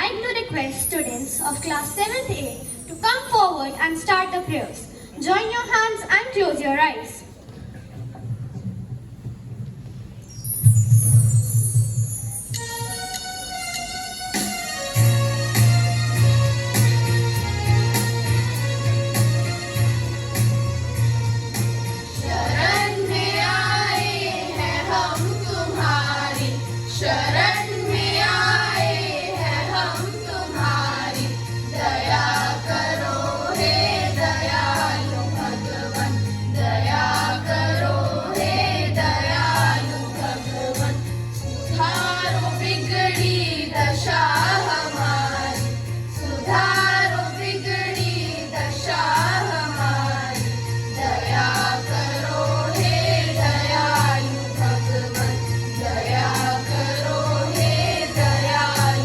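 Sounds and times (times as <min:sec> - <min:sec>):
low instrumental accompaniment: 0:12.4 - 0:59.0
children singing in chorus: 0:22.2 - 0:40.9.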